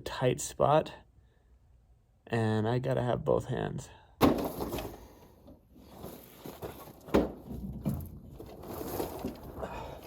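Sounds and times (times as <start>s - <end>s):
rustling and scraping handling noise: 4.3s - 10.0s.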